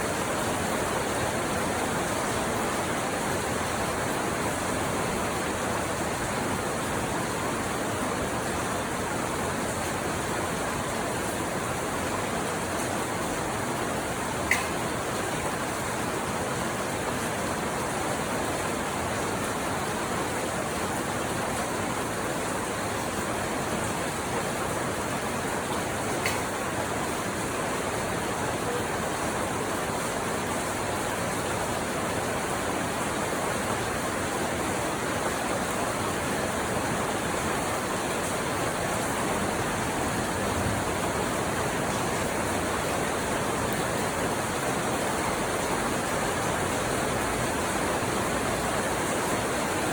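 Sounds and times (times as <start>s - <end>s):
rain falling: 0.0s - 49.9s.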